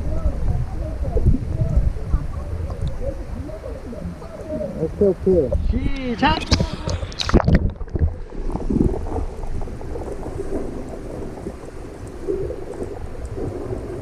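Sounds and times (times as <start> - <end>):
muffled underwater stream gurgling: 0.0 - 14.0
splash: 6.4 - 14.0.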